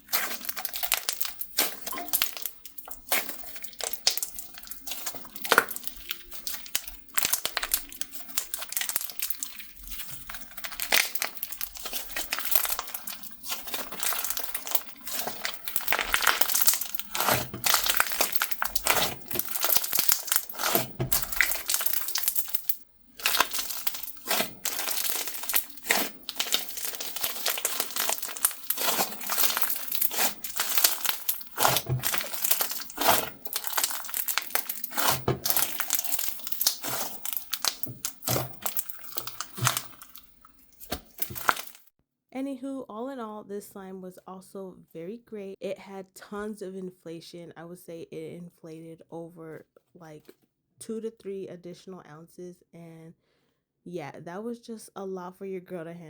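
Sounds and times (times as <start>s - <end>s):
hands squishing slime: 0.0s - 41.8s
sticky crackles and pops: 0.0s - 41.9s.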